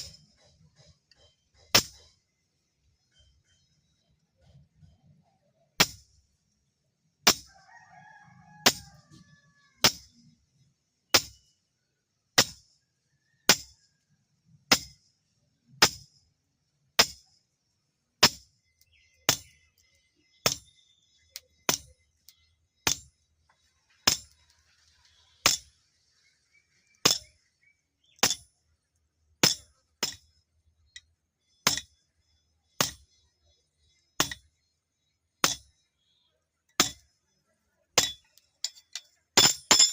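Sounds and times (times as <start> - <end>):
hammer striking steel on anvil: 27.0 - 27.3.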